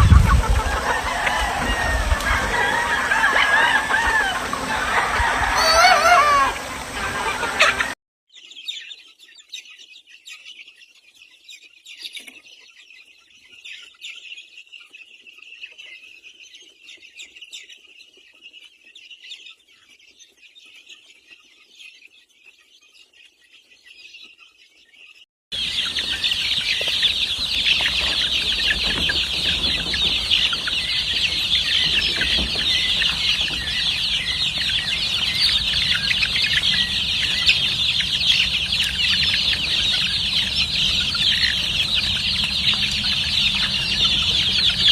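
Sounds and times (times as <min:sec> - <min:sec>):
chickens clucking: 0:00.0 - 0:08.0, 0:25.6 - 0:44.9
high-pitched chorus of calls: 0:00.4 - 0:08.0, 0:25.6 - 0:44.9.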